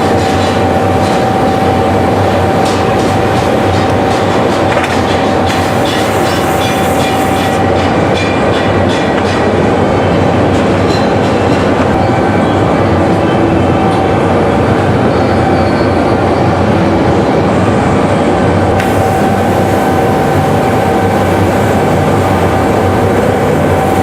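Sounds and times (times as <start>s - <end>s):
glassworks machinery roar: 0.0s - 24.0s.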